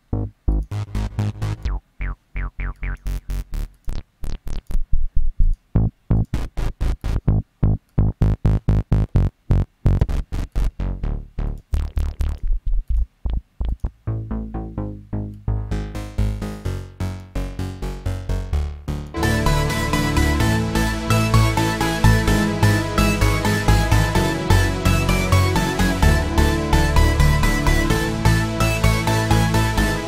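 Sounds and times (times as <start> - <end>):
synthesizer arpeggio: 0.0 - 3.7, 6.6 - 12.6, 13.7 - 16.9, 18.4 - 30.0.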